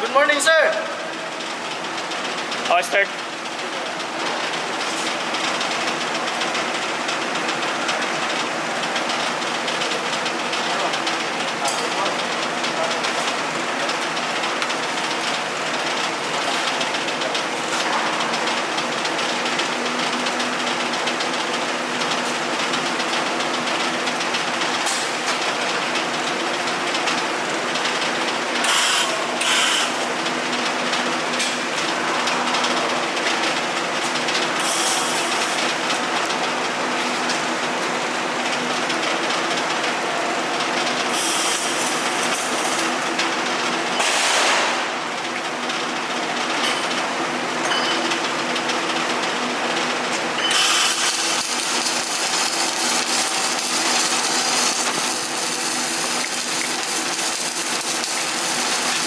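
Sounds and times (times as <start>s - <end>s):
welding machines humming: 0.0s - 59.0s
welding arc crackle and hiss: 27.2s - 30.3s, 34.0s - 36.3s, 39.5s - 45.0s, 48.7s - 59.0s.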